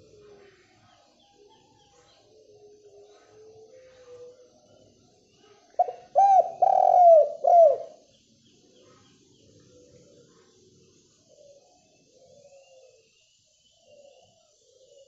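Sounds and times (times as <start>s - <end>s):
dove cooing: 5.6s - 8.1s, 11.2s - 13.1s, 13.8s - 15.0s.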